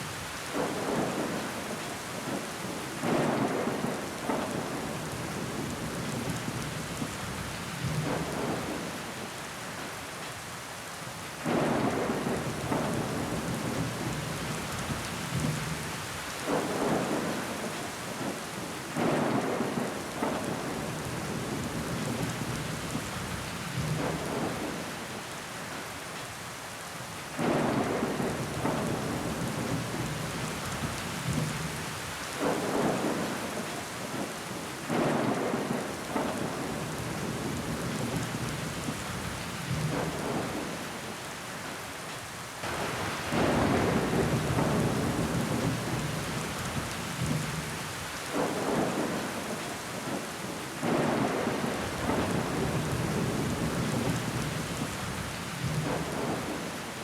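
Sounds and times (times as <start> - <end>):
rain pattering on a window: 0.0 - 57.0
loud rain surge: 42.6 - 57.0.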